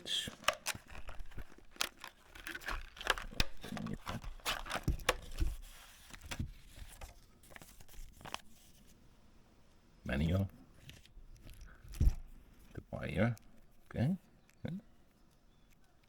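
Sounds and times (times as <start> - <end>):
package rustling and crinkling: 0.0 - 9.0.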